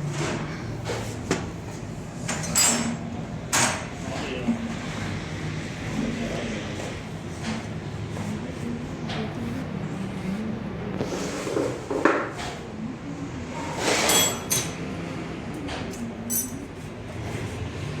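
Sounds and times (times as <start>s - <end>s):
small metal parts clinking: 16.3s - 16.6s.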